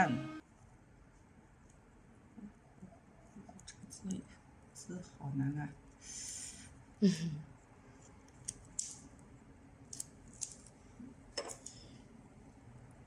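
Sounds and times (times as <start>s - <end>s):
film crinkling: 9.9s - 10.8s.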